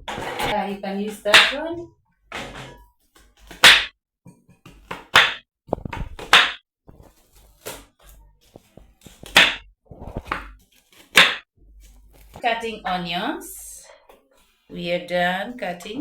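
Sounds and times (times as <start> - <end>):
knife chopping on cutting board: 2.4 - 3.9, 4.6 - 7.9, 9.0 - 11.4.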